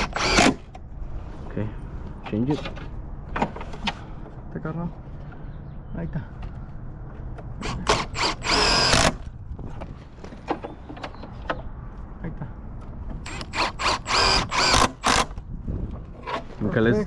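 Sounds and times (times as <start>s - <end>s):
power drill driving screws: 0.0s - 0.6s, 7.6s - 9.2s, 13.3s - 15.4s.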